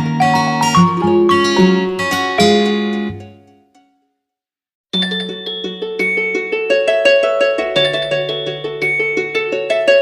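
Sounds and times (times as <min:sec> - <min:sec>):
phone ringtone bell-like melody: 0:05.0 - 0:09.6.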